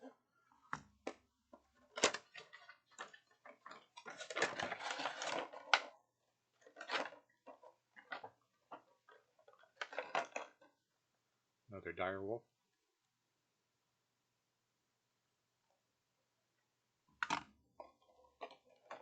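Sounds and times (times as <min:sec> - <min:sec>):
packaging rustling: 0:01.8 - 0:06.0.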